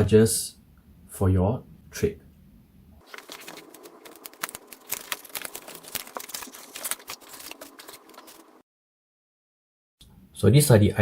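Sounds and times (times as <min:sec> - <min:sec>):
cardboard and plastic crinkling: 0:03.0 - 0:08.6.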